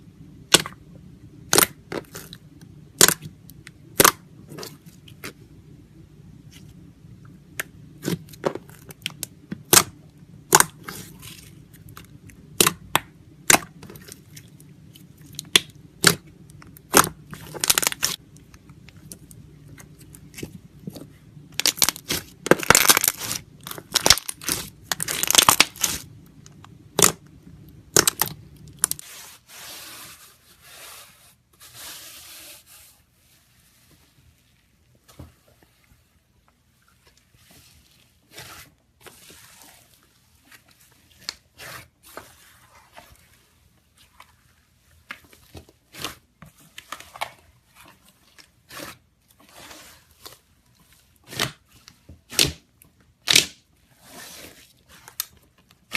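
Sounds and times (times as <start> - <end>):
slime squishing: 0.2 - 55.9
slime crackling: 7.5 - 29.2
slime popping and snapping: 16.9 - 18.2, 21.6 - 26.1, 26.9 - 27.3, 27.9 - 29.0, 53.2 - 53.6.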